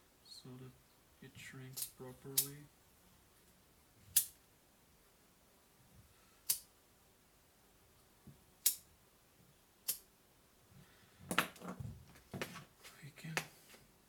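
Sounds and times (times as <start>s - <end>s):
sharp single clicks: 9.8s - 10.1s.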